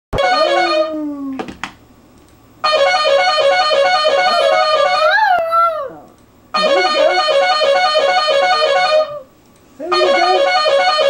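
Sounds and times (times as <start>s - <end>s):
electronic keyboard music: 2.7s - 5.5s, 6.6s - 9.3s, 9.9s - 11.0s
dog howling: 4.3s - 6.1s.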